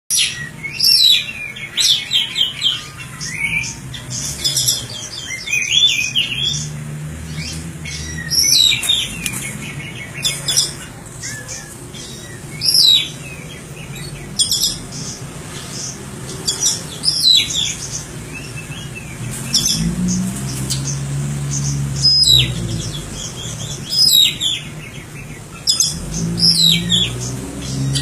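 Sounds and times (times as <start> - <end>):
songbird chirping and whistling: 0.1 - 15.2, 16.3 - 20.0, 21.6 - 28.0.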